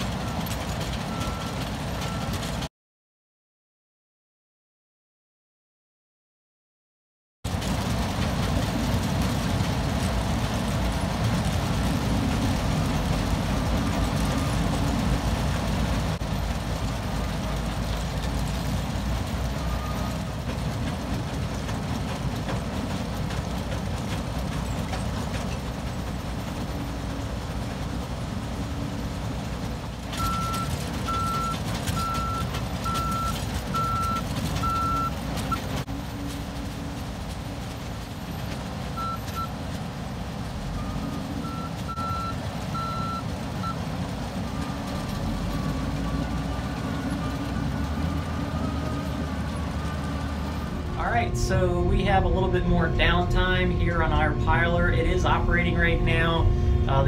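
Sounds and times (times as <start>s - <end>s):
heavy machinery engines rumbling: 0.0s - 2.7s, 7.5s - 57.0s
backup alarm beeping: 30.2s - 35.6s, 39.0s - 39.5s, 40.8s - 43.8s.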